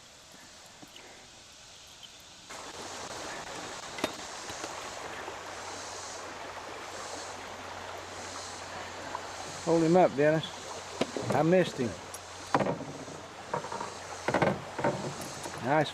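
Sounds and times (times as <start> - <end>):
river water rushing: 0.0 - 15.9.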